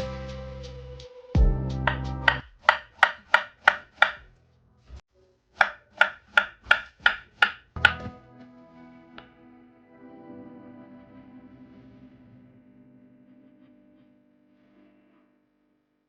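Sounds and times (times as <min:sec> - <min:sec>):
knife chopping on cutting board: 0:01.9 - 0:04.2, 0:05.6 - 0:08.0.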